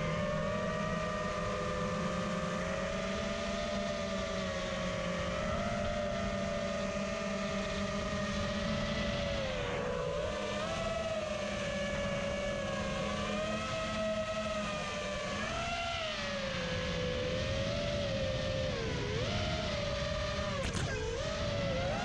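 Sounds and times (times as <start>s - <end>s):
quadcopter motors whining: 0.0s - 22.0s.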